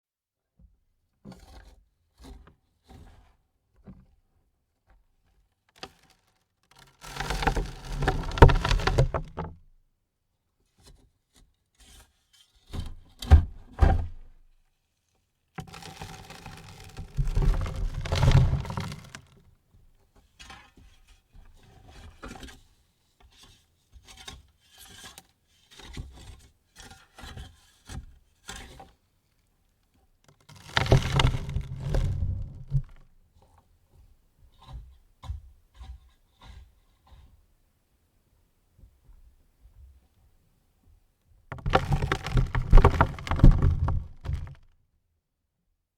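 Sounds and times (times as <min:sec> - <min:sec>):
pebbles pattering on wood: 0:07.0 - 0:09.5, 0:15.6 - 0:19.3, 0:30.5 - 0:33.0, 0:41.5 - 0:44.7
dirt landing on wooden coffin: 0:07.5 - 0:09.5, 0:17.1 - 0:19.2, 0:30.6 - 0:33.0, 0:41.5 - 0:44.6.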